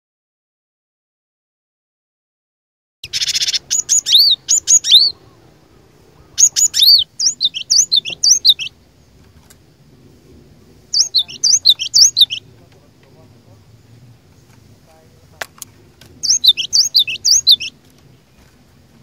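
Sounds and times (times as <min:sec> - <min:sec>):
bird whistled notes: 0:03.0 - 0:05.2, 0:06.3 - 0:08.7, 0:10.9 - 0:12.4, 0:16.2 - 0:17.8.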